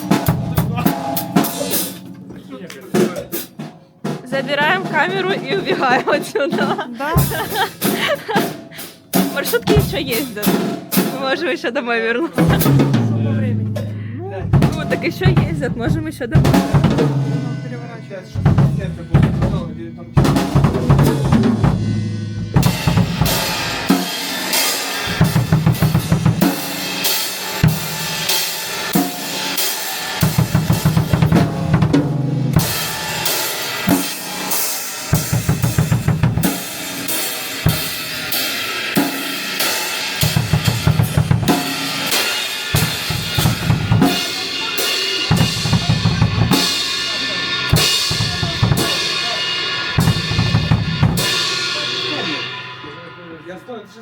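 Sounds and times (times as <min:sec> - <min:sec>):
cymbal crashes: 0:00.0 - 0:03.5, 0:16.5 - 0:54.0
bass drum strokes: 0:00.0 - 0:11.1, 0:12.4 - 0:24.3, 0:40.2 - 0:53.6.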